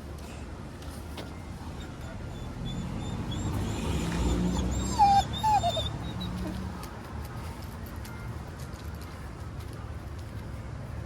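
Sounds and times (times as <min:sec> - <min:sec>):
dog whining: 0:01.8 - 0:06.6.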